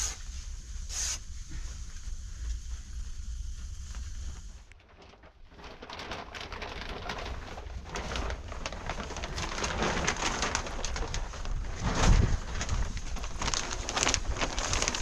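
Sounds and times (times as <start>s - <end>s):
rain pattering on surface: 5.6s - 15.0s.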